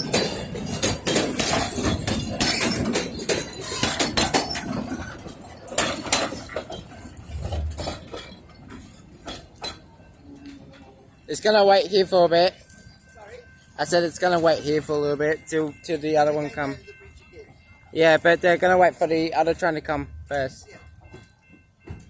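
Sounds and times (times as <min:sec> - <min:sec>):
clanks and knocks: 0:00.0 - 0:10.0.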